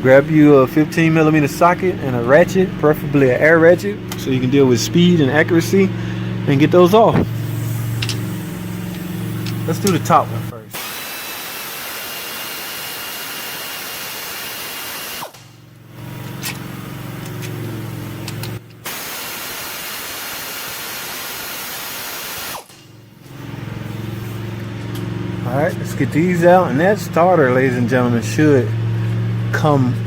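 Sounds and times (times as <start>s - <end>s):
pneumatic air ratchet running: 7.1s - 25.1s.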